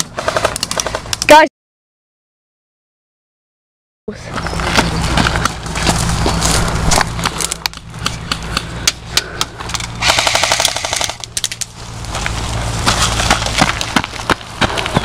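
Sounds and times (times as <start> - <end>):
airsoft gun shots: 10.0 - 11.2
full-auto airsoft burst: 10.0 - 11.2.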